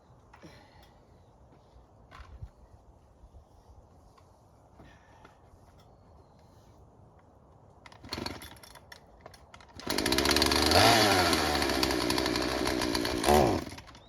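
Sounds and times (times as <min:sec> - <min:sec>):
chainsaw engine revving: 0:08.0 - 0:08.4, 0:09.8 - 0:14.0.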